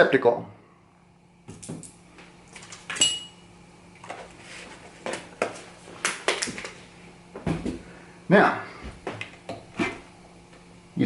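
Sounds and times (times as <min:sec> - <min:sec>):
kitchenware knocks and clinks: 0:02.9 - 0:03.4.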